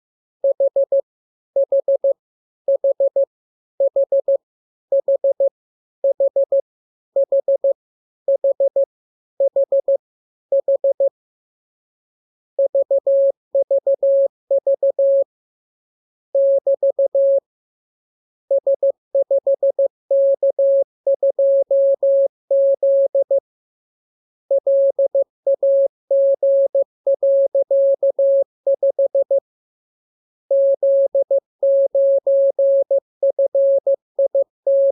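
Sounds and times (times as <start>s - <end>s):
morse code beeps: 24.6s - 29.4s, 30.5s - 34.9s.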